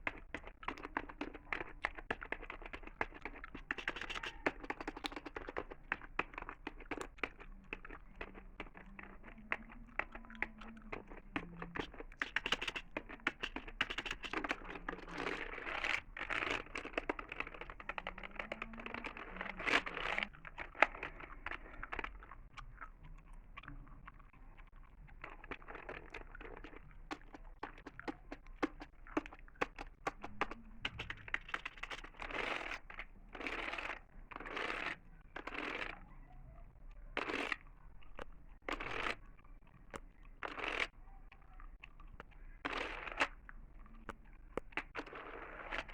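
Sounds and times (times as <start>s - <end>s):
computer keyboard tapping: 0.0s - 22.0s, 25.4s - 33.9s
gum chewing: 0.0s - 36.2s, 37.0s - 45.9s.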